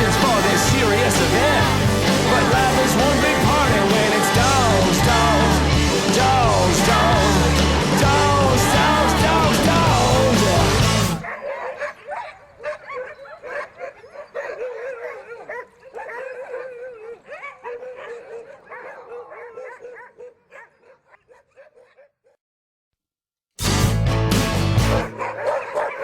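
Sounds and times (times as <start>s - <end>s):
sled dogs whining yipping and howling: 11.2s - 22.1s, 25.1s - 26.0s.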